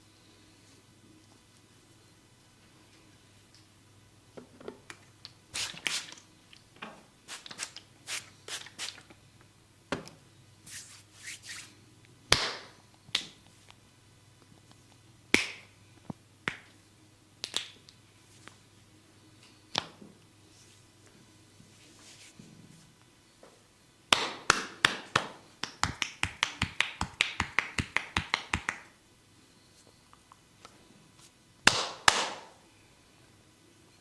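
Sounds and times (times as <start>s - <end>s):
hands snapping and clicking: 15.3s - 15.7s, 17.4s - 18.0s, 24.1s - 28.9s.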